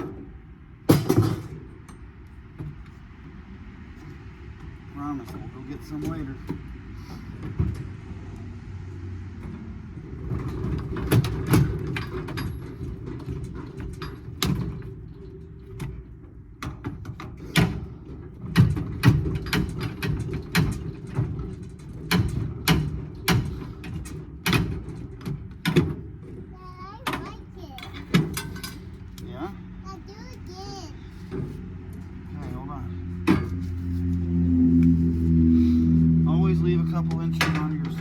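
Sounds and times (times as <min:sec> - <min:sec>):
metal knocks and clanks: 0:00.9 - 0:02.9.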